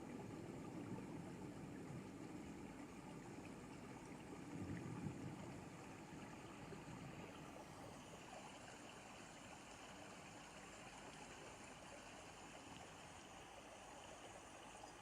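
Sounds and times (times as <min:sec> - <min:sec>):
faint steady rain: 0:00.0 - 0:15.0
low rumble of thunder: 0:04.3 - 0:07.3.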